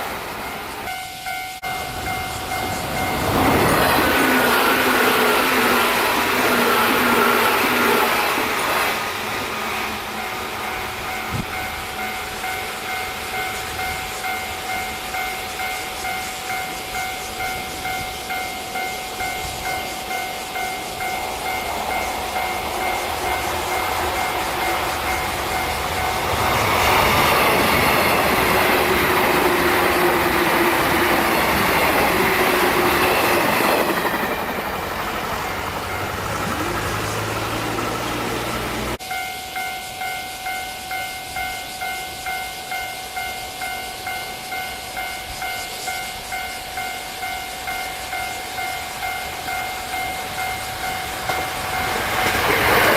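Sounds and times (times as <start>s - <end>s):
level crossing warning bell: 0.0s - 52.9s
train wheels clattering on rails: 0.0s - 52.9s.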